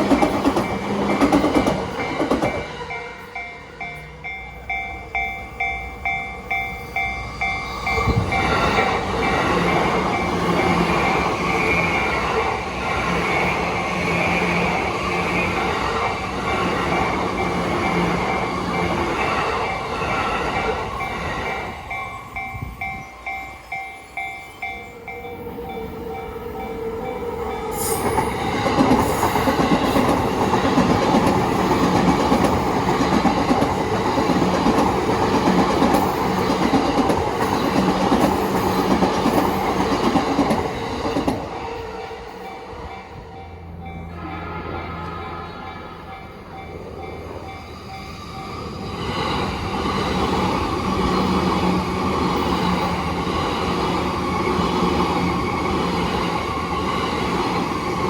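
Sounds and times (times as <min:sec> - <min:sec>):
train passing: 0:00.0 - 0:58.0
level-crossing bell ringing: 0:02.1 - 0:11.2, 0:20.6 - 0:28.5, 0:41.7 - 0:48.8.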